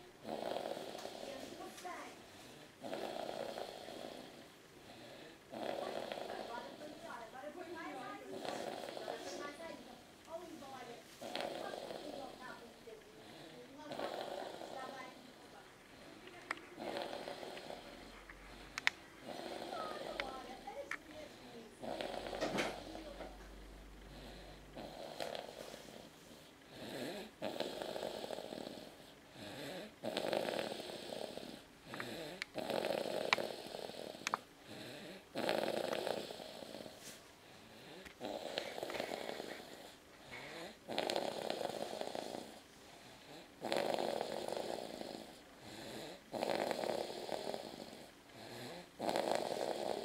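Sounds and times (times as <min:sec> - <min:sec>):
person snoring: 0:00.2 - 0:01.5, 0:02.8 - 0:07.0, 0:08.3 - 0:09.6, 0:11.2 - 0:16.2, 0:16.8 - 0:23.1, 0:24.1 - 0:26.1, 0:26.7 - 0:37.0, 0:37.6 - 0:42.6, 0:43.2 - 0:50.0
faint clicks: 0:18.3 - 0:19.0, 0:34.2 - 0:34.4.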